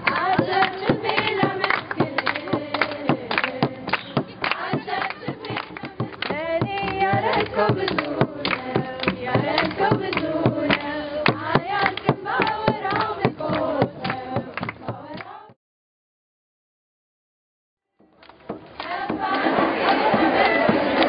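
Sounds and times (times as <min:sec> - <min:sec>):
hand-struck percussion beat: 0:00.0 - 0:15.5, 0:18.0 - 0:21.0
music with singing: 0:00.0 - 0:15.6.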